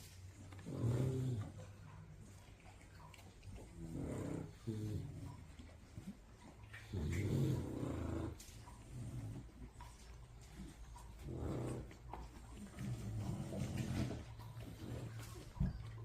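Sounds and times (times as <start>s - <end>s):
dog snoring: 0.6s - 1.7s, 3.6s - 5.5s, 6.8s - 9.7s, 10.5s - 15.8s.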